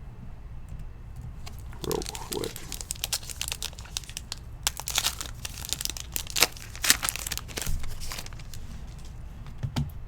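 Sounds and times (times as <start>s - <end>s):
wrapper crinkling: 1.4s - 9.4s.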